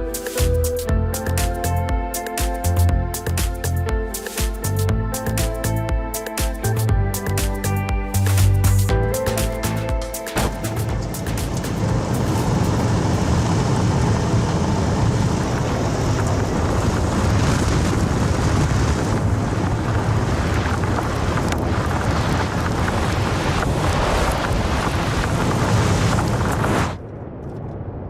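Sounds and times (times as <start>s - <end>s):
tyre and road noise: 7.6s - 27.9s
vehicle rumble and wind noise: 7.6s - 28.0s.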